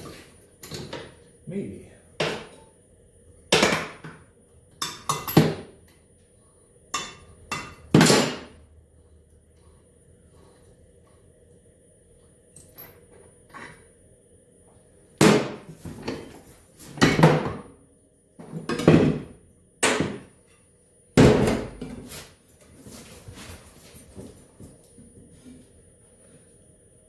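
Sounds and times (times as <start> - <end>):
hammer striking metal: 6.9 - 8.5.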